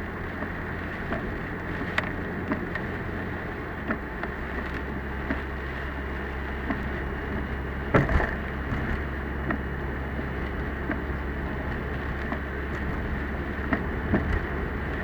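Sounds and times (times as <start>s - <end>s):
car engine and road rumble: 0.0s - 15.0s
rain ticking on car: 0.0s - 15.0s
loud knock: 7.9s - 9.0s.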